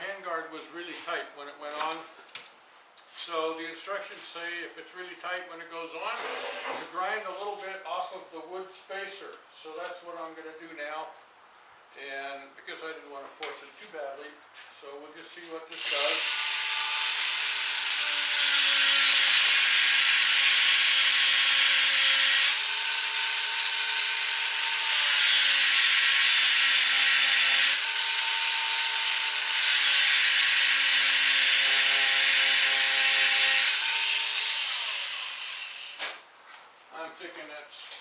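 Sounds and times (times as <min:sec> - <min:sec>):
grinder rasping on wood: 0:15.8 - 0:28.9, 0:29.5 - 0:35.8
electric grinder running: 0:15.8 - 0:36.0.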